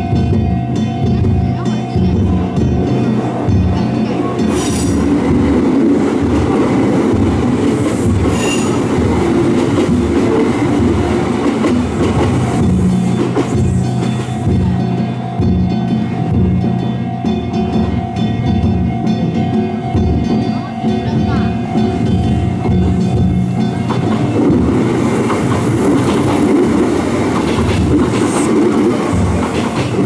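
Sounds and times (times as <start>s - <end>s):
festival drums beating: 0.0s - 30.0s
train wheels on rails: 0.0s - 30.0s.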